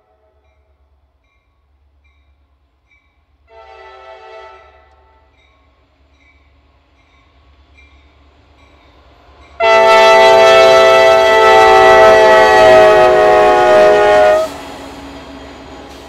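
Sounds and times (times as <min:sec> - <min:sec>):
locomotive air horn chord: 0:03.5 - 0:05.2, 0:09.6 - 0:14.6.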